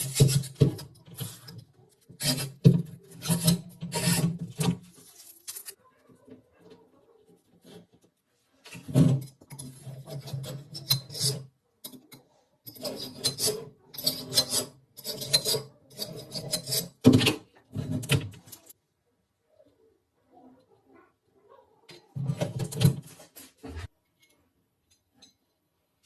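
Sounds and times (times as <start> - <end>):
rasping file strokes on metal: 2.2 - 4.4, 12.7 - 17.0.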